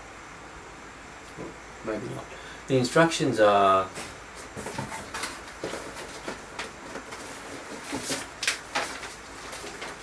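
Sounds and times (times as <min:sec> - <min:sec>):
steady background hiss: 0:00.0 - 0:10.0
rustling and clicking handling: 0:04.0 - 0:10.0.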